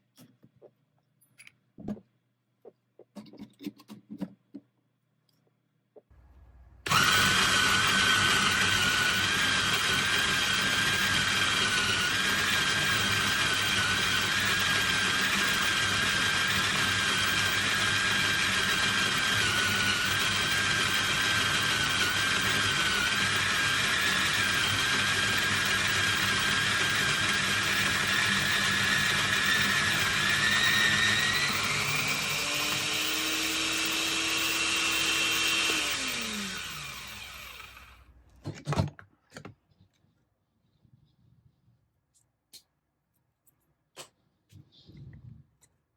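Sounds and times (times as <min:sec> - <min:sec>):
coffee grinder whining: 0:06.2 - 0:38.2.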